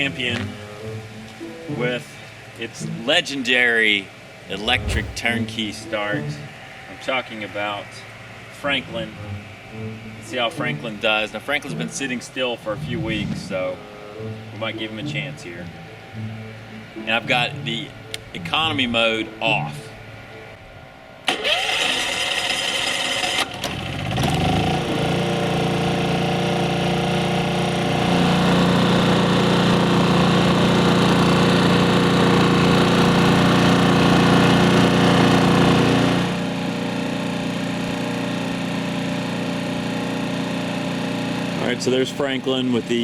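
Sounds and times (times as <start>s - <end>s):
generator starter cranking: 21.3s - 24.6s
generator engine running: 21.3s - 43.0s.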